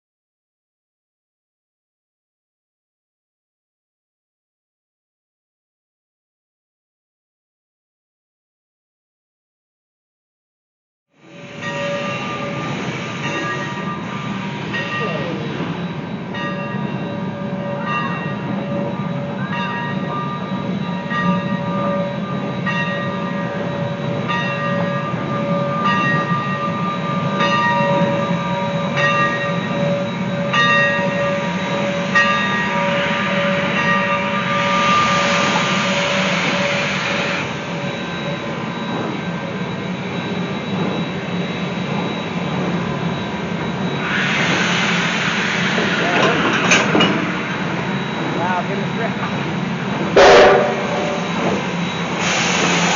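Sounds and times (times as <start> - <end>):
steam hissing: 11.2 - 16.0, 31.2 - 38.2, 43.7 - 52.9
locomotive bell ringing: 11.2 - 44.1, 44.9 - 52.9
steady tone: 46.9 - 52.9.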